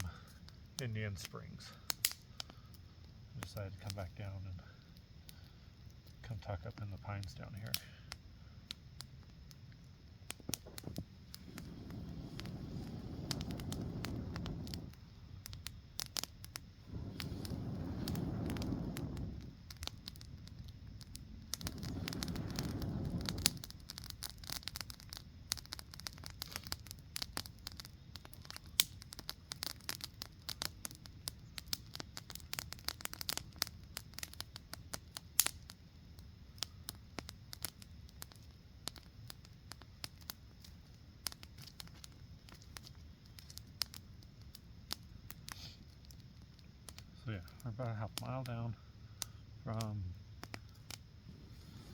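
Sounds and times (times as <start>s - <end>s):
campfire crackling and popping: 0.0s - 51.9s.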